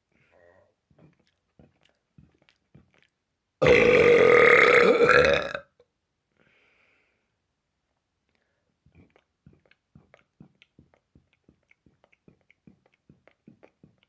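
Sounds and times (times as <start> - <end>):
long loud burp: 3.6 - 5.7.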